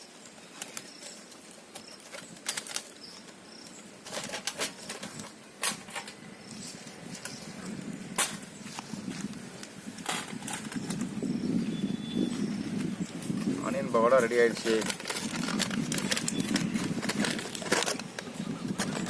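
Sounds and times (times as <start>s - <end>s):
faint bird chirps: 10.8s - 13.2s.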